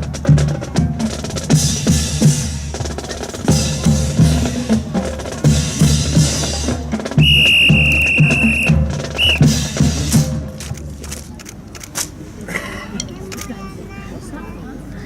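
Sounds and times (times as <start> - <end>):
drum-led music: 0.0 - 11.2
long shrill whistle blast: 7.2 - 9.4.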